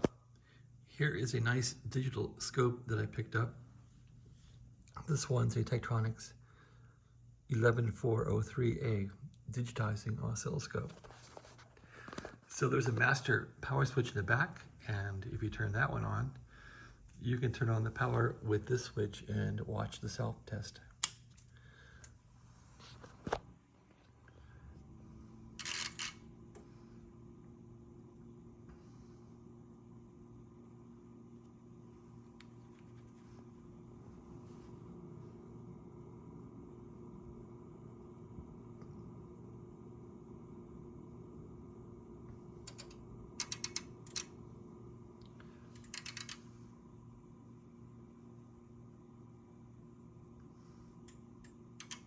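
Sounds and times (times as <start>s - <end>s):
steady low hum: 0.0s - 52.0s
relays clicking: 42.6s - 44.3s, 45.8s - 46.4s, 51.0s - 52.0s.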